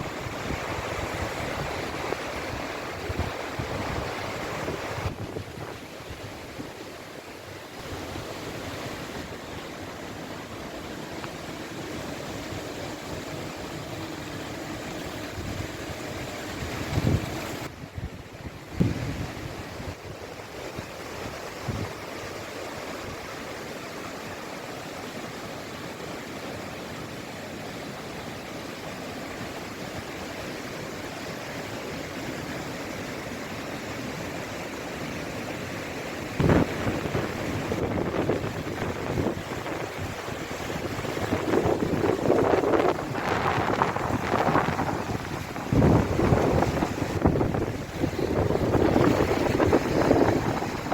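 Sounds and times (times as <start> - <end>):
wind buffeting microphone: 0.0 - 6.8, 10.7 - 22.0, 36.3 - 50.9
river rushing: 0.0 - 50.9.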